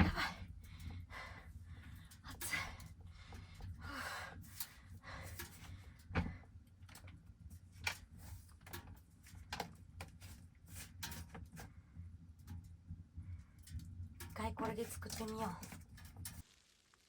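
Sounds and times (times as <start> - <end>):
steady low hum: 0.0 - 16.4
knocks and rustles of handling: 4.5 - 16.4.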